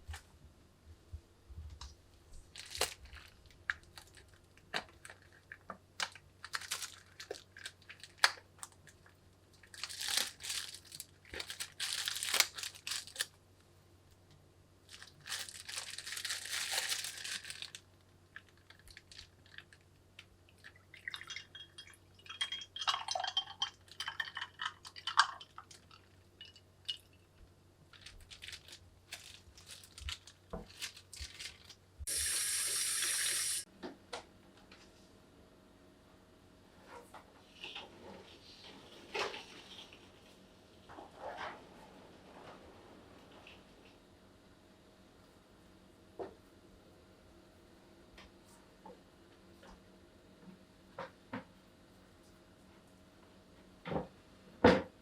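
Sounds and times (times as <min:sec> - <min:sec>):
plastic wrapping crinkling: 0:02.4 - 0:13.4, 0:14.9 - 0:21.4, 0:27.9 - 0:32.1.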